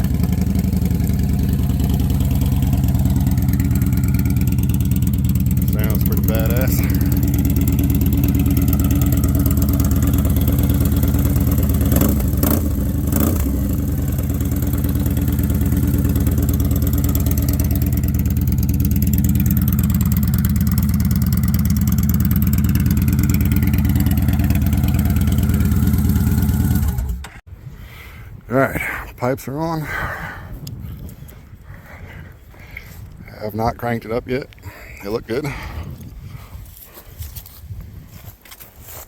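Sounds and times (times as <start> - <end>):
motorcycle engine idling loudly: 0.0 - 27.3.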